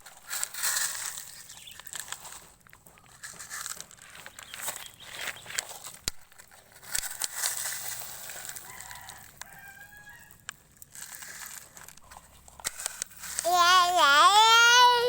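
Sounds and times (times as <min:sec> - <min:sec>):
rooster crowing: 0:08.6 - 0:10.4.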